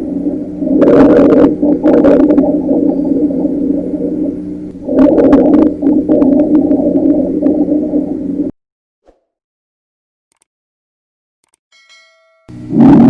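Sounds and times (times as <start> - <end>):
crackle-like clicks: 11.4 - 11.6.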